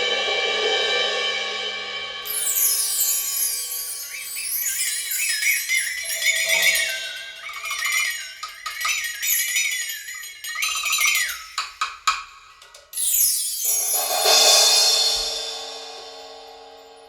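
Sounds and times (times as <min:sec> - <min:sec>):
percussion music over speakers: 0:02.2 - 0:09.4, 0:13.2 - 0:16.8
ringing bell-like tones: 0:02.2 - 0:17.0.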